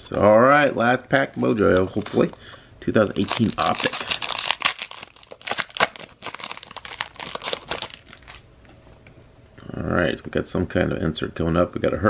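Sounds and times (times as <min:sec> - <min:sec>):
foil wrapper tearing and crinkling: 0:03.0 - 0:08.5.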